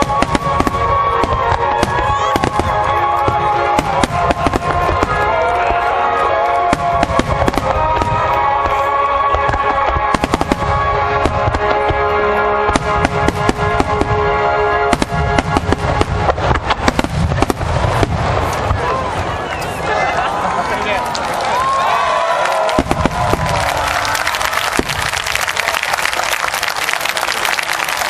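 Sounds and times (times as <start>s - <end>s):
music with long held notes: 0.0s - 18.4s
fireworks bursting and crackling: 0.0s - 28.0s.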